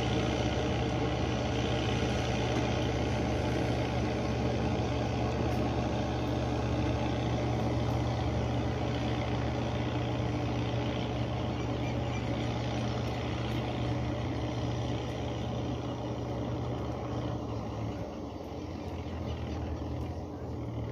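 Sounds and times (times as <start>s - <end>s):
heavy vehicle engine running: 0.0s - 20.9s.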